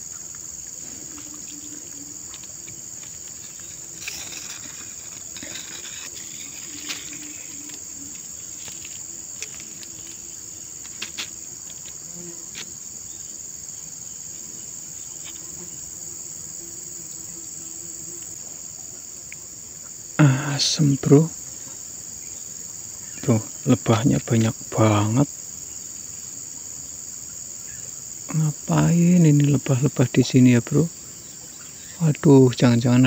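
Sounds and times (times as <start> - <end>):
bees buzzing: 0.0 - 13.4
high-pitched insect drone: 0.0 - 33.0.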